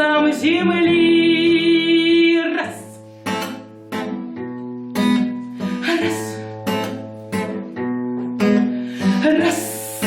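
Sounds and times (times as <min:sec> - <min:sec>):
acoustic guitar strumming chords: 0:00.0 - 0:10.0.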